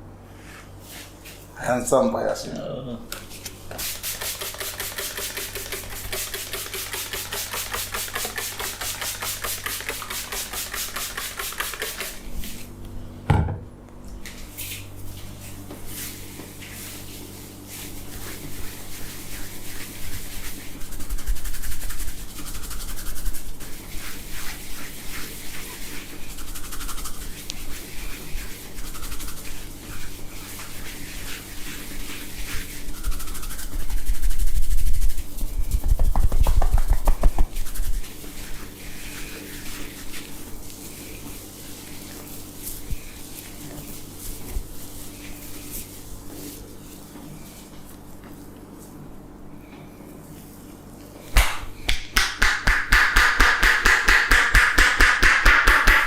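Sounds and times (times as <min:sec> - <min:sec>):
hands rubbing scalp and hair: 0:00.4 - 0:01.5, 0:03.2 - 0:12.7, 0:14.3 - 0:49.0
patting on head: 0:35.7 - 0:38.0.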